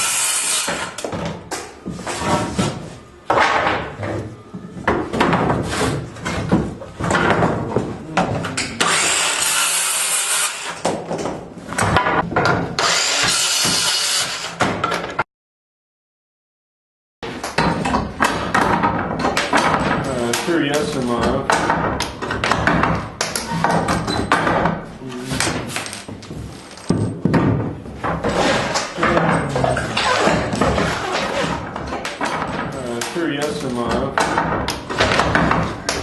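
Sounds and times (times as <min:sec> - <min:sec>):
wood being cut: 0:00.0 - 0:00.9, 0:08.8 - 0:10.8, 0:12.8 - 0:14.6
power tools: 0:00.0 - 0:01.0, 0:08.8 - 0:10.8, 0:12.8 - 0:14.6.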